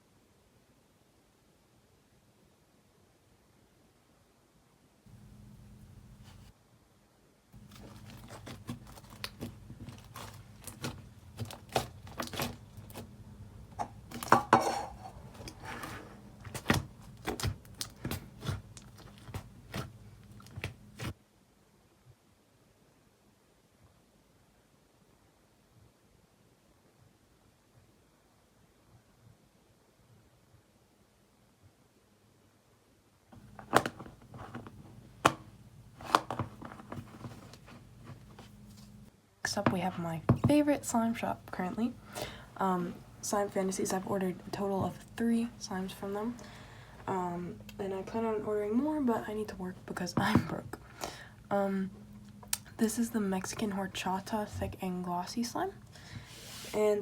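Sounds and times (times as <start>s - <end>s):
soft crackles: 7.6s - 13.1s
slime squishing with pops: 7.7s - 13.1s, 16.4s - 21.1s.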